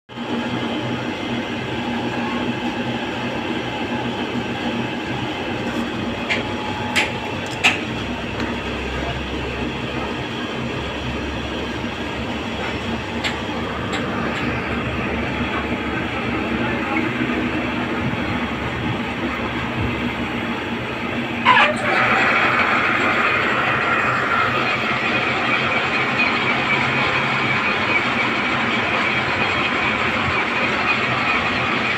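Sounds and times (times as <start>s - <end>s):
boring machine drone: 0.1s - 31.9s
short sharp squeal: 21.4s - 22.2s.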